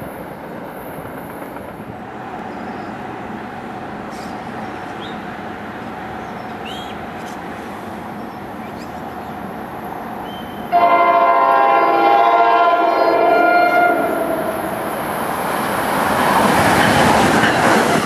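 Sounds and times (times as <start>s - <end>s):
train rumbling: 0.0s - 18.0s
bird chirps: 4.1s - 5.3s, 6.2s - 7.4s, 8.2s - 9.4s, 10.2s - 10.7s
locomotive air horn chord: 10.7s - 14.8s.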